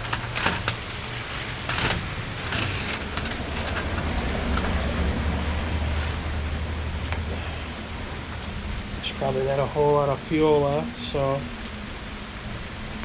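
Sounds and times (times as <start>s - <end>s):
vehicle rumble: 0.0s - 9.0s.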